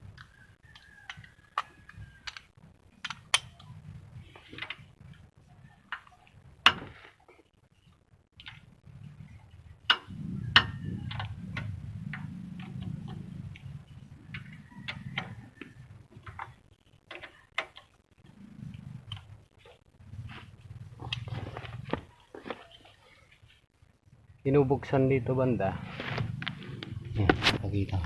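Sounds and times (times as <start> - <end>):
low rumble: 8.8 - 16.1, 25.1 - 28.0
sharp clicks and knocks: 9.8 - 13.6.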